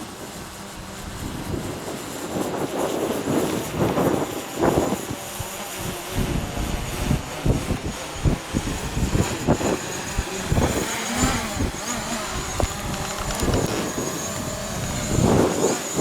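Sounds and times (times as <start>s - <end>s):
drone propellers whining: 0.0s - 16.0s
wind buffeting microphone: 0.0s - 16.0s.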